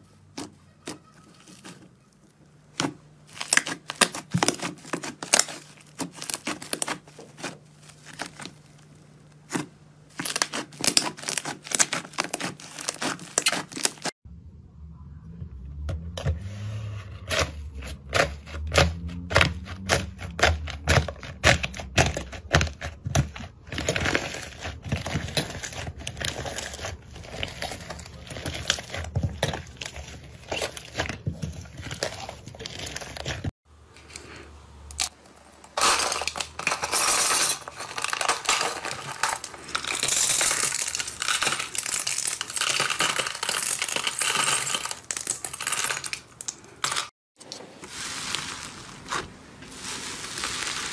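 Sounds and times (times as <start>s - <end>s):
slime clicking and crackling: 2.8s - 14.1s, 38.0s - 44.3s.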